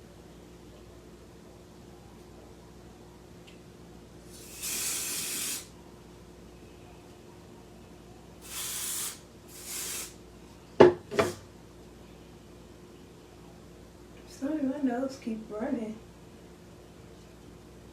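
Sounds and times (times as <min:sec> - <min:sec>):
hair spray hissing: 0:04.3 - 0:05.7, 0:08.4 - 0:10.2.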